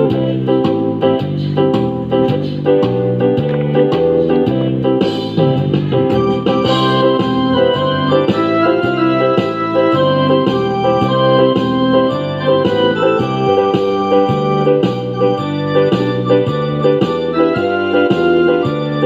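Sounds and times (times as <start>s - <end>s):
electronic keyboard music: 0.0s - 19.0s.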